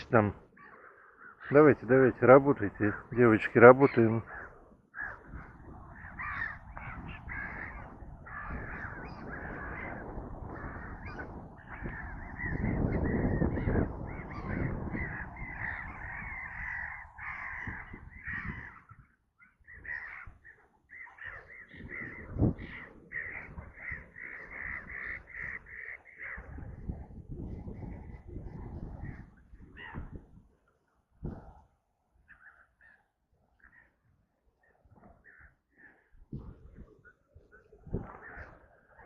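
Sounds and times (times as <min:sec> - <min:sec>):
birds cawing: 0:00.0 - 0:26.7, 0:32.3 - 0:36.1.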